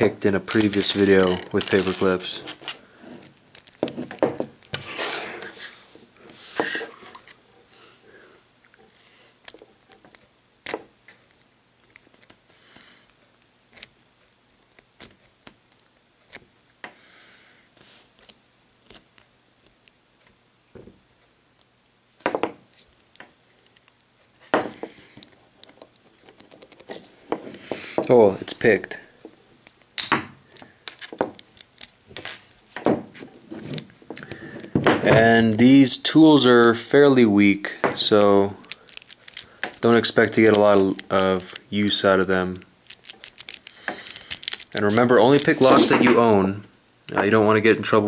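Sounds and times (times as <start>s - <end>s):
lock pins rattling: 38.0s - 41.8s, 42.8s - 46.0s.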